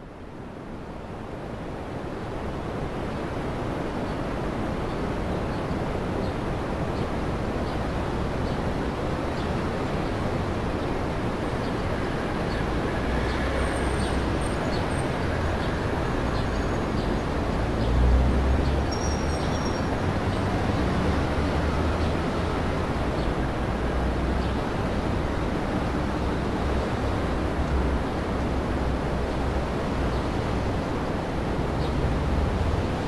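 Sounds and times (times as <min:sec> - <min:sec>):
distant road traffic hum: 0:07.2 - 0:33.0.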